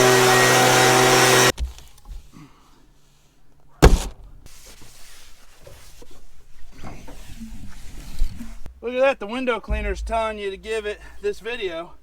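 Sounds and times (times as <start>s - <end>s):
blower engine drone: 0.0s - 1.5s
loud sharp thump: 3.8s - 4.4s.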